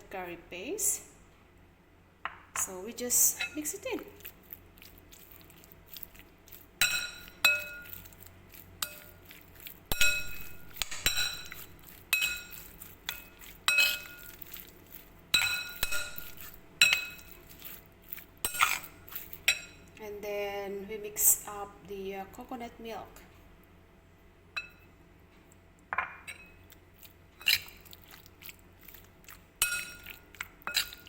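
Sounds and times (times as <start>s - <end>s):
utensil clinking against bowl: 5.4s - 19.9s, 27.4s - 31.0s.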